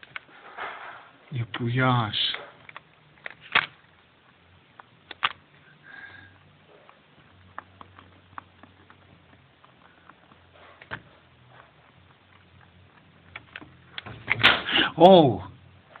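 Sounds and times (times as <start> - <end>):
rabbit gnawing on cable: 6.4 - 14.1.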